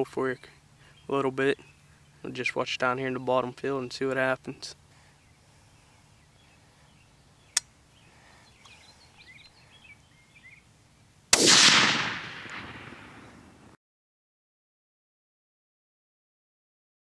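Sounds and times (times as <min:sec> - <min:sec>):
faint bird chirps: 0:04.5 - 0:10.7
rifle shot with echo: 0:11.3 - 0:13.8.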